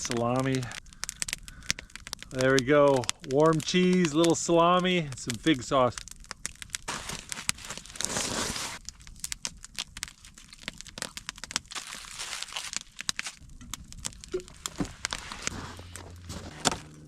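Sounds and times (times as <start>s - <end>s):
wood fire crackling: 0.0s - 17.0s
rustling crinkle: 5.2s - 17.0s.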